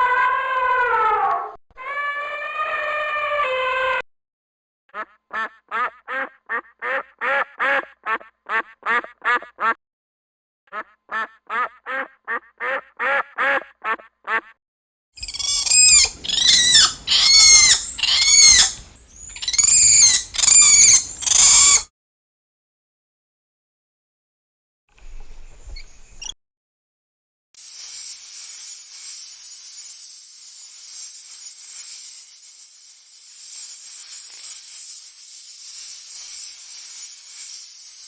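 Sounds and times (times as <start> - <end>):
duck quacking: 4.9 - 9.8, 10.7 - 14.6
high arching animal calls: 15.2 - 21.9.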